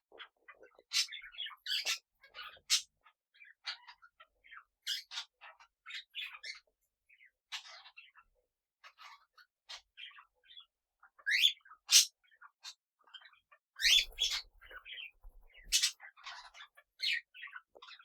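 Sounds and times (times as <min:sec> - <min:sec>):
parrots chirping and squawking: 0:00.5 - 0:06.6, 0:11.3 - 0:12.1, 0:13.8 - 0:18.0.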